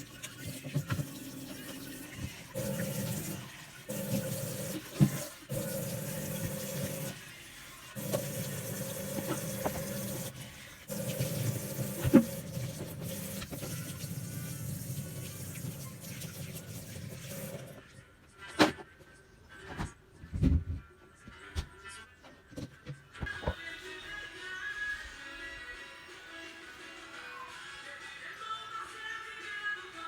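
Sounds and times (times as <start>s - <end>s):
water running from a tap: 0.0s - 17.8s.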